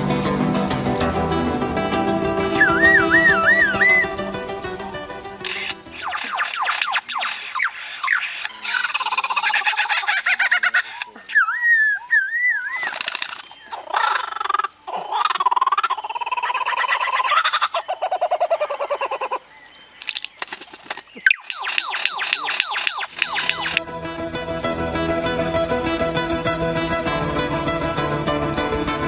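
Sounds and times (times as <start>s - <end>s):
whistled bird calls: 2.5s - 4.2s, 5.5s - 9.9s, 11.3s - 14.2s, 21.1s - 23.8s
harsh bird calls: 2.5s - 4.3s, 5.4s - 23.8s
rapid sweeping bird chirps: 2.5s - 4.3s, 5.4s - 23.8s.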